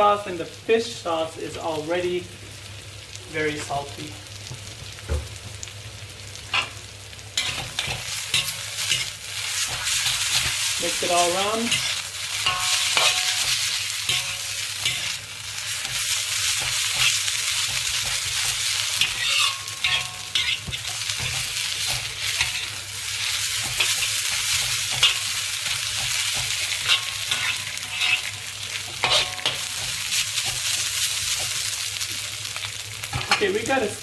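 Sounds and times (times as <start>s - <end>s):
noodles sizzling in a wok: 0.0s - 34.0s
utensil scraping and clinking on pan: 7.4s - 15.2s, 15.8s - 22.8s, 23.6s - 30.7s.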